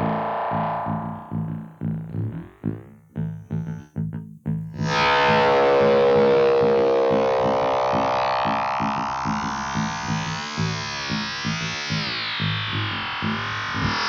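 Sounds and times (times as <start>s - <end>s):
flanged noise drone: 0.0s - 1.5s
low repeating pulse: 0.0s - 2.1s.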